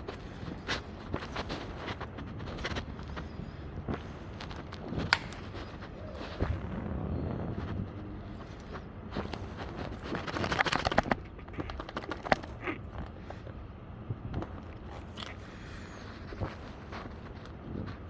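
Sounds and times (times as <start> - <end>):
scraping handling noise: 0.0 - 13.6.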